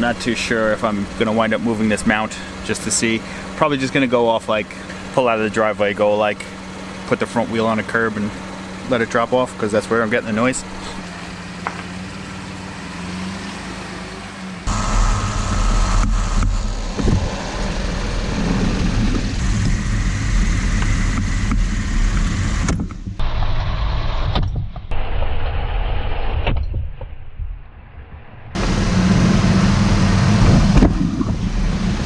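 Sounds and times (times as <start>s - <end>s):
pickup truck idling: 0.0s - 21.2s
road and wind noise rumbling: 0.0s - 32.0s.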